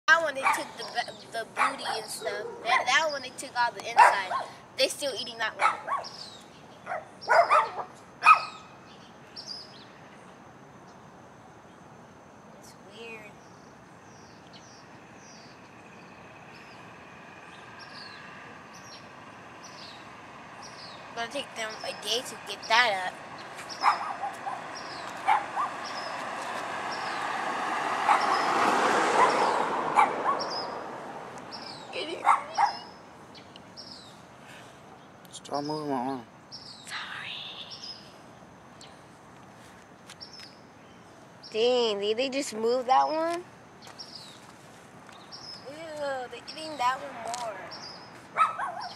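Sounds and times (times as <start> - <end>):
dog barking: 0.4 - 0.8, 1.6 - 2.8, 4.0 - 4.6, 5.6 - 6.2, 6.9 - 8.6, 23.8 - 25.9, 28.0 - 28.5, 29.2 - 30.6, 32.2 - 32.9, 48.4 - 48.9.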